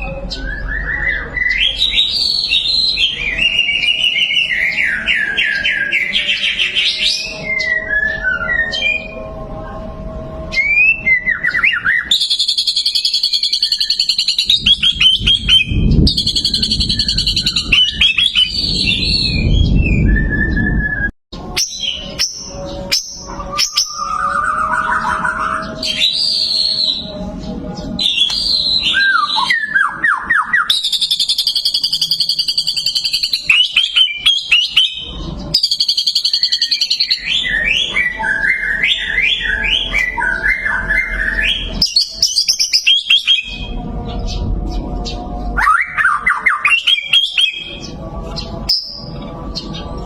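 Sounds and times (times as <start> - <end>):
bird singing whistles and trills: 0.0 - 9.8, 10.4 - 50.0
low rumbling noise: 14.0 - 29.5, 43.4 - 46.3, 47.0 - 50.0.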